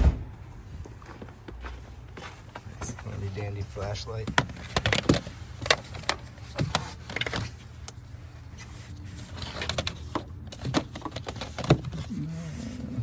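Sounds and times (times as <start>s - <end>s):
clicks and knocks on plastic parts: 4.2s - 7.5s.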